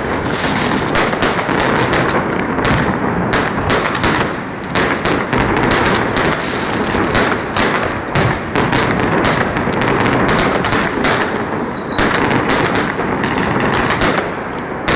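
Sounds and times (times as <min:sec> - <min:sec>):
falling firework whistle: 0:00.0 - 0:01.1, 0:05.8 - 0:07.8, 0:10.6 - 0:12.2
firecrackers banging and crackling: 0:00.0 - 0:14.9.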